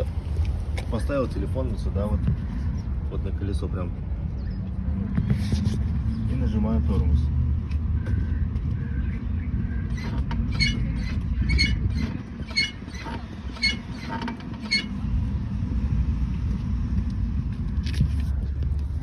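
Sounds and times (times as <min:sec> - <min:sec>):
low rumble: 0:00.0 - 0:19.0
drum brake creaking: 0:09.9 - 0:15.0.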